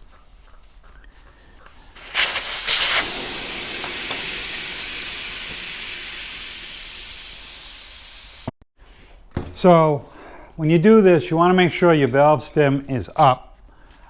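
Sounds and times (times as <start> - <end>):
air hissing out of a tire: 1.8 - 8.6.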